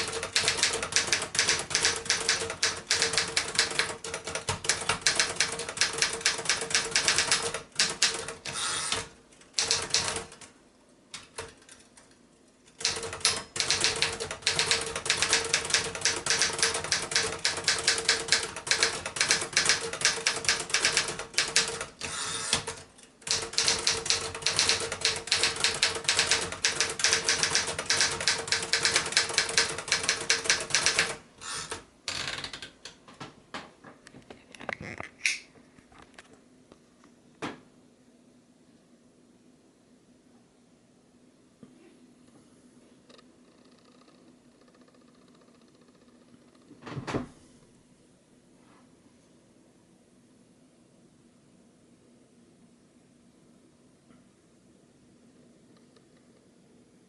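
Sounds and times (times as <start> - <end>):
typewriter key strikes: 0.0 - 10.4, 12.8 - 31.8.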